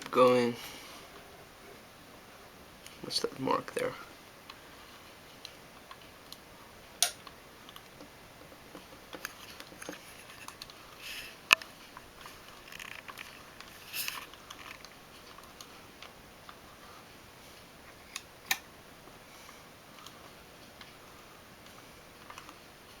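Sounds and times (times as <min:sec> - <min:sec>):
camera winding clicks: 0:12.5 - 0:15.0.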